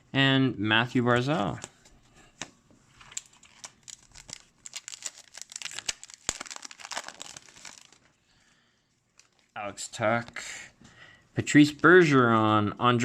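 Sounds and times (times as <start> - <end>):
plastic wrapper tearing and crinkling: 2.9 - 8.2, 9.2 - 9.6.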